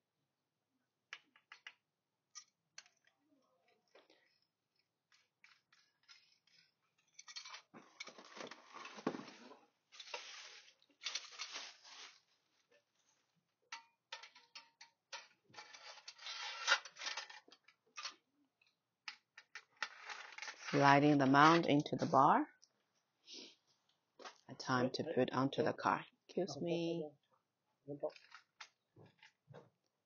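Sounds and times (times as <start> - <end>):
small clicks and knocks: 1.1 - 3.2, 13.7 - 16.2
parts scraping and rattling: 5.1 - 12.2, 13.7 - 18.2, 19.1 - 22.2.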